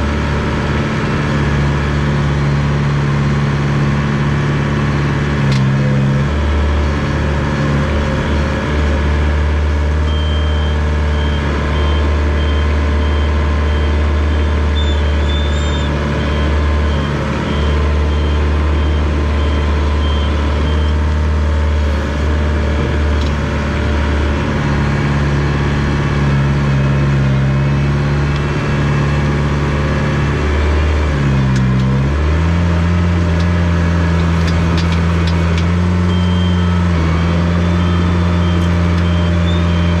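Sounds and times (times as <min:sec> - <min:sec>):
bulldozer diesel engine running: 0:00.0 - 0:40.0
reversing alarm beeping: 0:10.0 - 0:21.1, 0:35.9 - 0:40.0.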